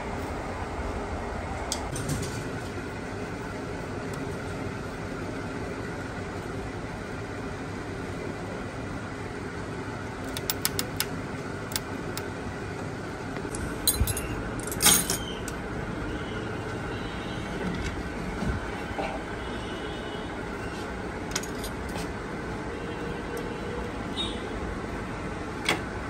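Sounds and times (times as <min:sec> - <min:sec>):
background hum: 0:10.0 - 0:19.8.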